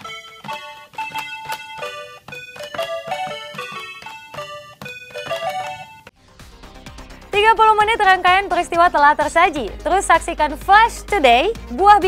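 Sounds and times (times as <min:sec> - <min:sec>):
calculator buttons playing melody: 0:00.0 - 0:06.1.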